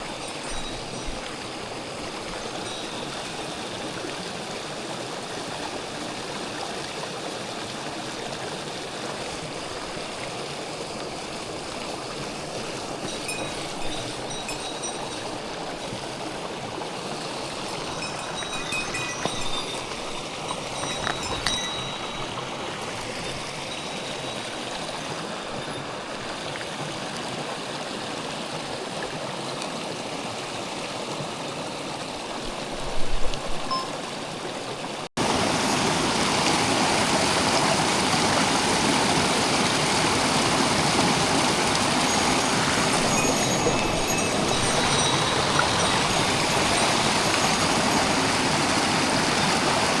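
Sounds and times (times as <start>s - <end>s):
stream rushing over rocks: 0.0s - 50.0s.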